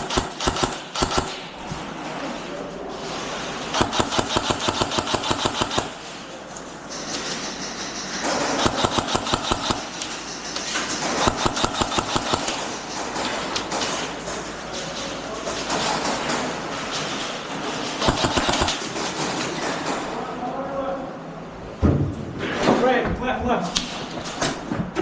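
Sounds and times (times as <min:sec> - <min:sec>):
airsoft guns firing full-auto bursts: 0:00.0 - 0:01.5, 0:03.8 - 0:06.2, 0:08.2 - 0:12.8, 0:18.0 - 0:19.4.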